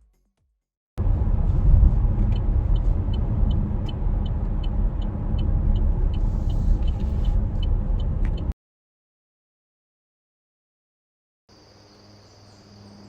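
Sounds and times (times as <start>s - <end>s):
road and engine rumble in car: 1.0s - 8.6s.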